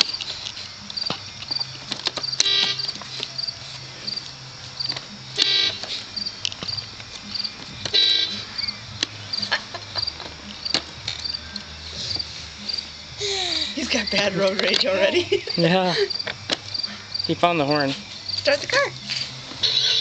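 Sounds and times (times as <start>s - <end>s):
crickets chirping: 0.0s - 20.0s
car horn honks: 2.4s - 3.0s, 5.4s - 5.9s, 7.9s - 8.4s, 19.6s - 20.0s.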